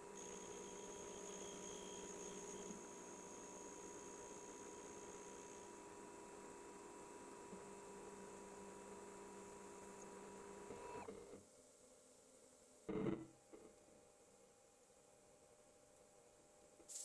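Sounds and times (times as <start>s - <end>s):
milling machine whine: 0.0s - 6.4s.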